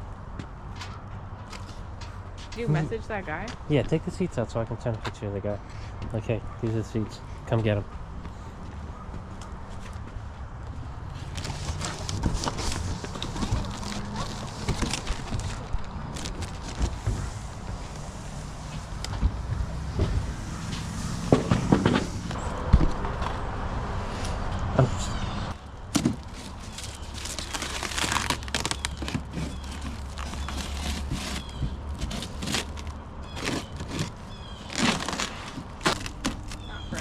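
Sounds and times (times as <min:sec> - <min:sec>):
crackling rustles: 0:11.1 - 0:19.5, 0:25.5 - 0:37.0.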